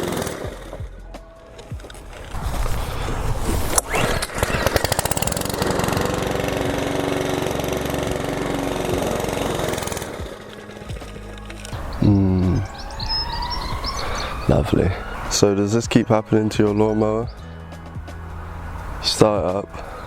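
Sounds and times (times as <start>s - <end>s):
lawn mower engine starting and running: 0.0s - 15.4s.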